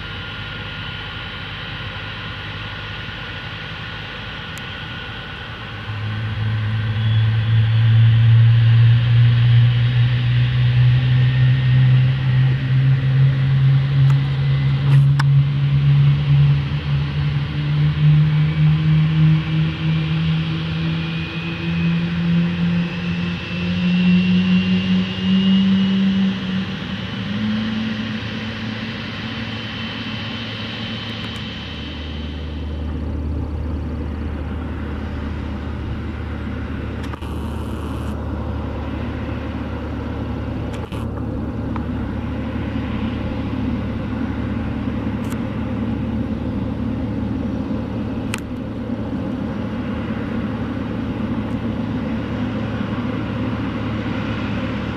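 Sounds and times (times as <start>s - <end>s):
jet engine spooling up: 0.0s - 54.9s.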